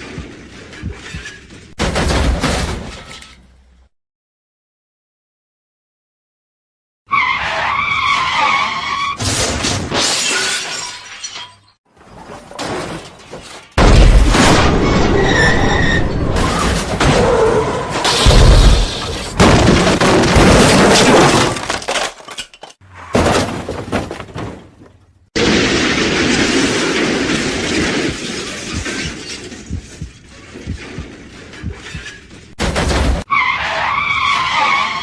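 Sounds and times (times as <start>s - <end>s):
car crash with crunching metal: 1.8s - 3.2s, 12.2s - 29.6s
tyres screeching: 7.1s - 9.3s, 28.0s - 32.6s, 33.3s - 35.0s
glass shattering: 9.2s - 11.8s, 18.0s - 24.6s, 25.4s - 33.1s.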